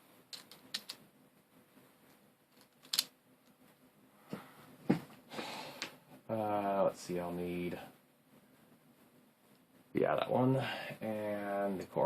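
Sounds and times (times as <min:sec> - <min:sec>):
plastic puzzle pieces clicking: 0:00.3 - 0:01.0, 0:02.5 - 0:03.1.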